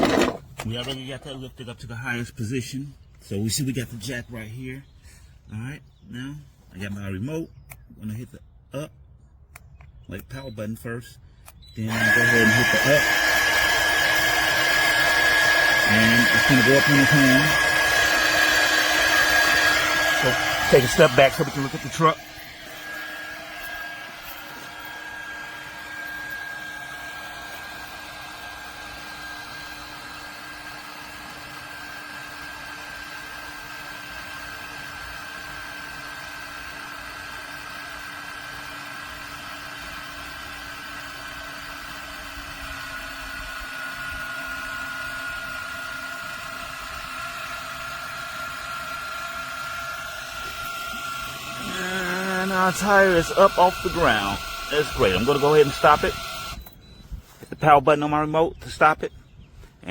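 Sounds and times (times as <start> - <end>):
electric car jack motor whine: 0.0 - 0.6, 11.5 - 58.3.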